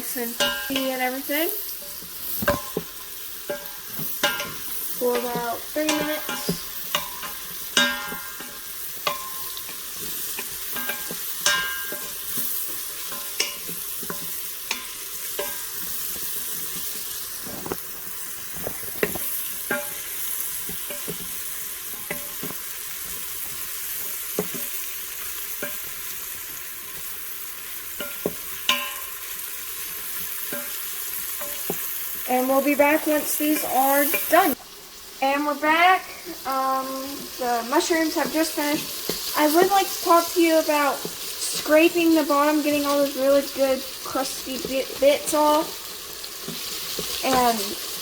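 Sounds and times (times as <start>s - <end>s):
mushrooms sizzling in butter: 0.0s - 48.0s
utensil clinking metal pot: 0.3s - 1.0s, 1.8s - 16.3s, 27.9s - 29.4s.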